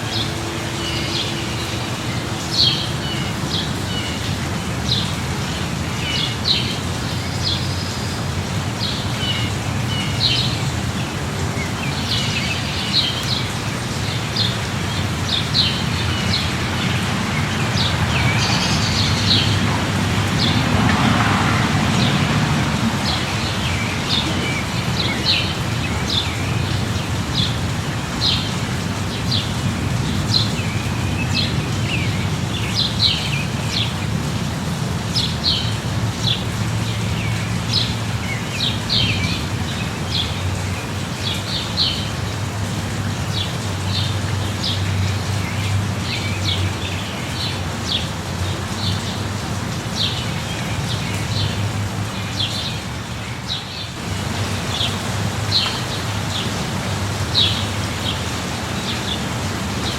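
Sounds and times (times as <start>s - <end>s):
light rain: 0.0s - 59.9s
small birds chirping: 11.6s - 34.2s, 43.3s - 56.6s.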